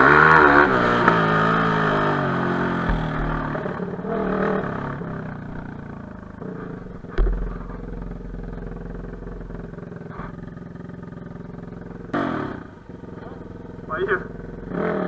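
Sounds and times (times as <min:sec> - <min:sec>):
motorcycle engine: 0:00.0 - 0:15.0
dull knock: 0:02.8 - 0:03.5.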